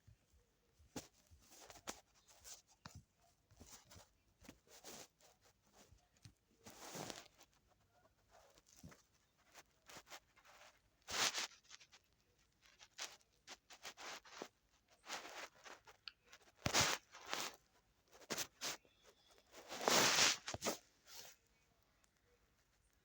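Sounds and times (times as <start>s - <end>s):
rustling and scraping swishes: 8.5s - 12.0s, 12.6s - 21.4s.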